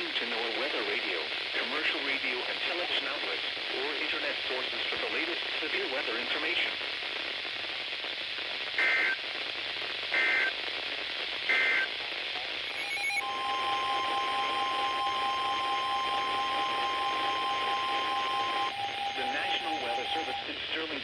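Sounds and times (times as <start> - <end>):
radio receiver hissing: 8.7 - 9.3, 10.1 - 10.6, 11.4 - 11.9, 12.7 - 21.0
long alert tone: 12.7 - 20.4
warbling data bursts: 12.7 - 20.5.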